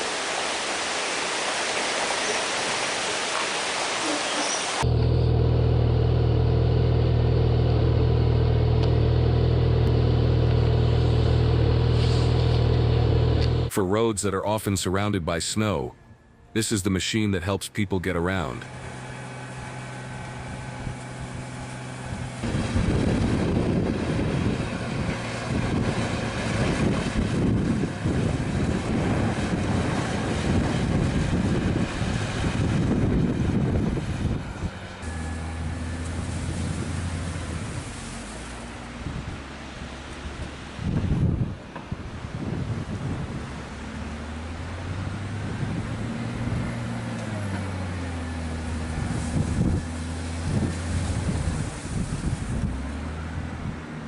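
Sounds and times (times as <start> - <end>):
vehicle engine noise: 0.0 - 54.0
wind noise on microphone: 20.7 - 34.8, 38.9 - 39.4, 40.3 - 43.9, 45.0 - 46.9, 48.8 - 53.9.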